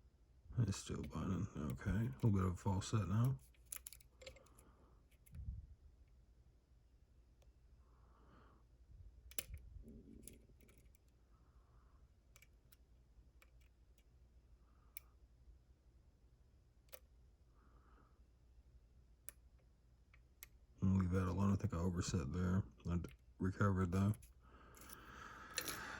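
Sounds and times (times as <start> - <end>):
lock pick clicking in lock: 3.6 - 5.3.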